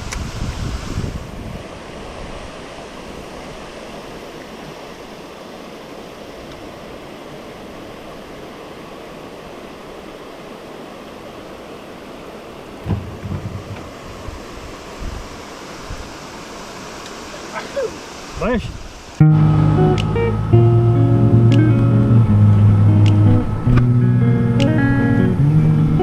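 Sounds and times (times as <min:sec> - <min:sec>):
wind buffeting microphone: 0:00.0 - 0:04.0, 0:12.7 - 0:16.5, 0:19.9 - 0:26.0
waterfall rushing: 0:00.0 - 0:26.0.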